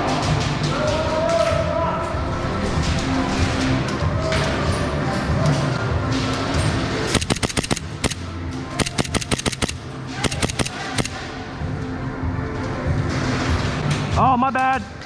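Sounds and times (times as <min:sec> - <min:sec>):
airsoft pistol firing bursts: 0:07.1 - 0:11.2.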